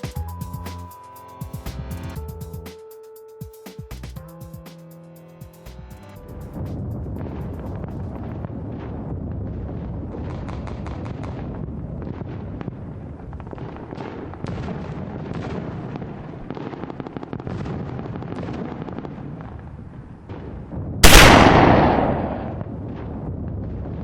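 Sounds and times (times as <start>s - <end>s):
very loud bang: 21.0s - 22.7s.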